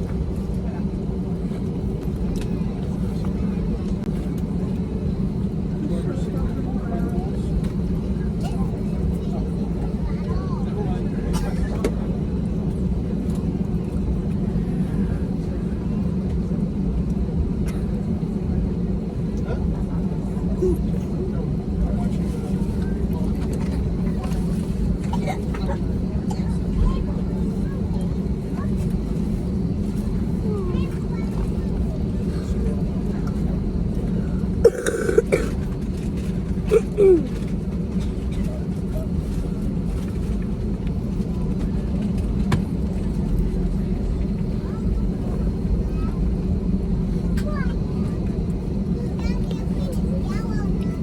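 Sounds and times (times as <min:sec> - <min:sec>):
airliner cabin low rumble: 0:00.0 - 0:51.0
person coughing: 0:34.7 - 0:35.6, 0:36.7 - 0:37.3.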